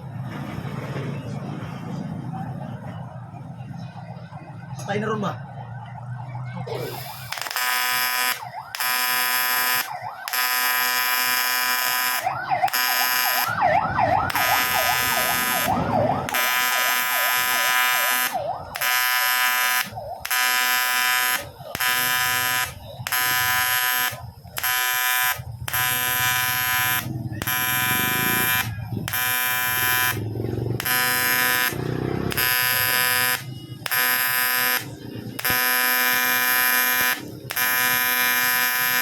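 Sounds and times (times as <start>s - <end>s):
welding arc buzzing: 6.7s - 13.5s, 14.3s - 39.0s.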